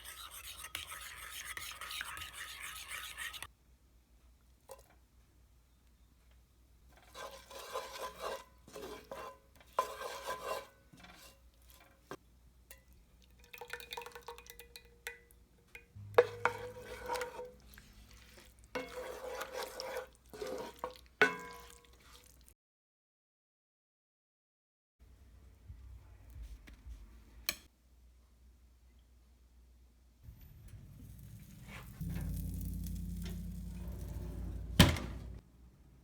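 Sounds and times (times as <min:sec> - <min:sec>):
utensil scraping in a pot: 0:00.0 - 0:03.5, 0:06.9 - 0:12.2, 0:16.0 - 0:22.5, 0:30.3 - 0:35.4.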